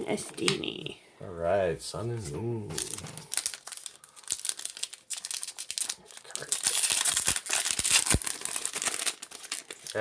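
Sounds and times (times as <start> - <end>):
foil wrapper crinkling and tearing: 2.8 - 10.0.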